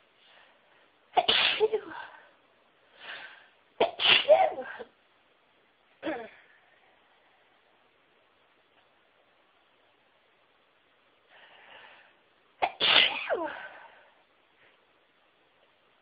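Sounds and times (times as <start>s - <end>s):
woman sneezing: 1.2s - 2.1s, 3.8s - 4.9s, 12.6s - 13.7s.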